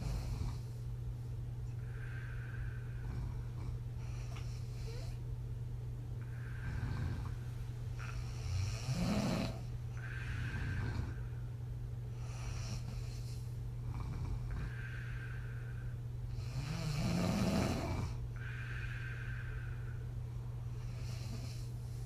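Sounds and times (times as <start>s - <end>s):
woman snoring through loose lips: 8.0s - 11.2s, 16.4s - 18.6s.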